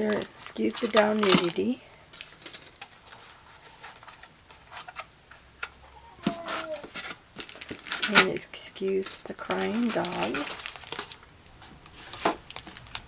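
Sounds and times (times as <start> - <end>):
dog whining: 5.8 - 7.0.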